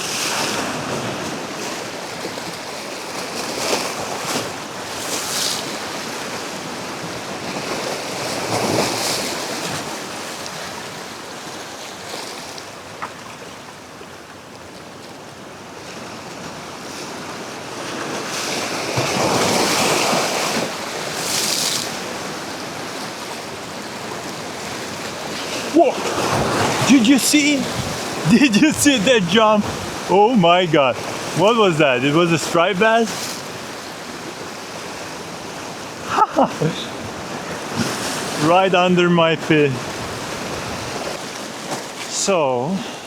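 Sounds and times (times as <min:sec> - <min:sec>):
waves washing against rocks: 0:16.3 - 0:42.3
wind on microphone: 0:25.4 - 0:30.2.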